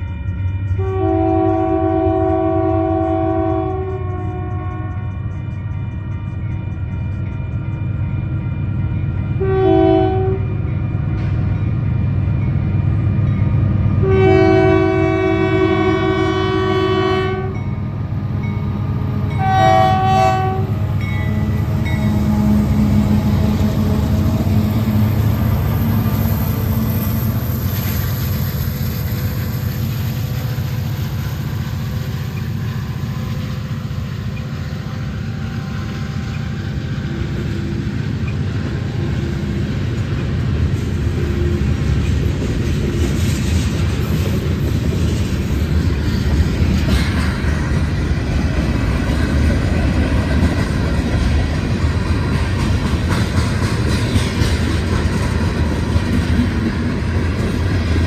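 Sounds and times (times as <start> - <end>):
locomotive air horn: 0.0 - 6.4, 9.4 - 10.6, 14.0 - 17.6, 19.0 - 26.7, 34.7 - 37.7
diesel locomotive rumble: 0.0 - 58.0.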